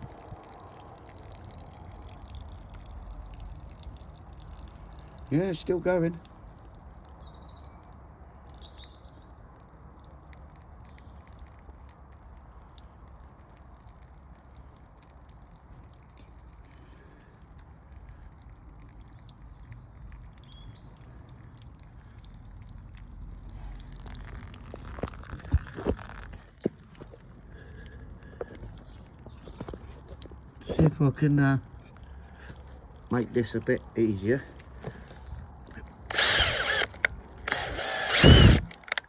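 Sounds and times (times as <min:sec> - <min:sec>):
water running and dripping: 0:00.0 - 0:35.9.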